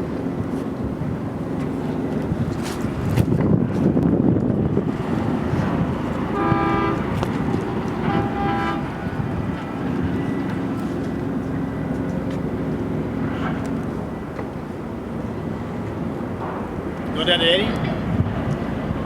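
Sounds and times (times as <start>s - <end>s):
horn toots: 6.3s - 9.0s.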